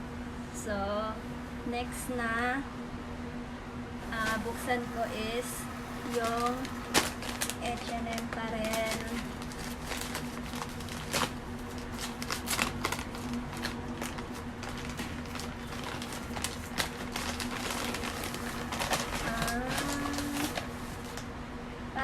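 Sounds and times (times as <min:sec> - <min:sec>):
steady low hum: 0:00.0 - 0:22.0
packaging rustling and crinkling: 0:04.1 - 0:21.2.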